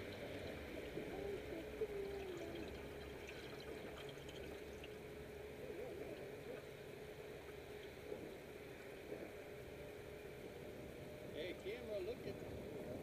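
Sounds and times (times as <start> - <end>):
water gurgling and trickling: 0.0 - 9.6
faint steady hum: 0.0 - 13.0.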